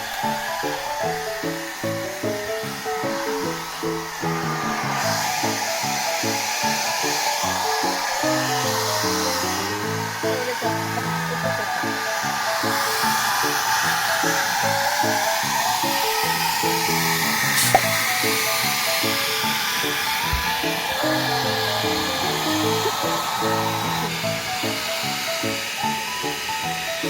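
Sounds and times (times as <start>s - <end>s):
background music: 0.0s - 27.0s
hair dryer blowing: 0.0s - 27.0s
single click: 17.6s - 17.9s.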